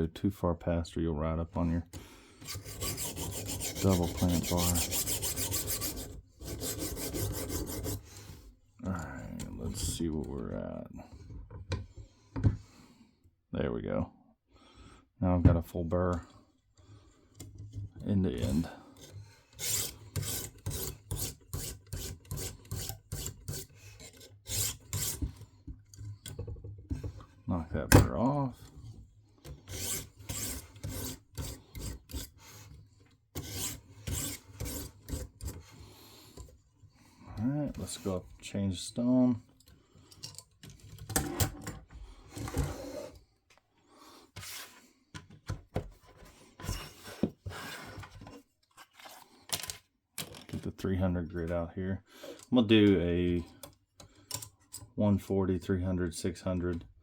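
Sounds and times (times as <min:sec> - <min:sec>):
sharpening stone rasping on knife: 0:02.4 - 0:08.0, 0:19.6 - 0:25.2, 0:29.7 - 0:32.6, 0:33.4 - 0:35.7.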